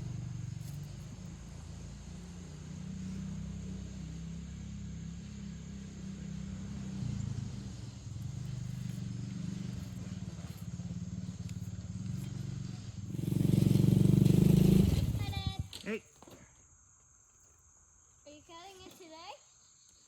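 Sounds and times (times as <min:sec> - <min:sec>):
small gasoline engine running: 0:00.0 - 0:15.8.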